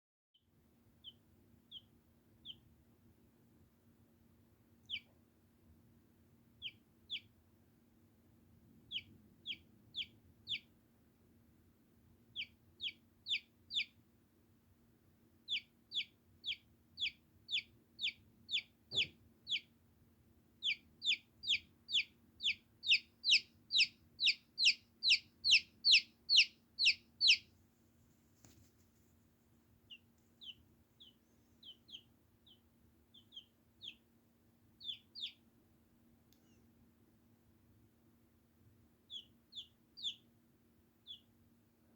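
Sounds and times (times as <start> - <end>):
baby chick peeping: 1.0 - 2.8, 4.8 - 5.3, 6.5 - 7.5, 8.7 - 10.8, 12.2 - 14.1, 15.4 - 19.8, 20.6 - 27.5, 29.7 - 35.5, 38.9 - 40.4, 41.0 - 41.4.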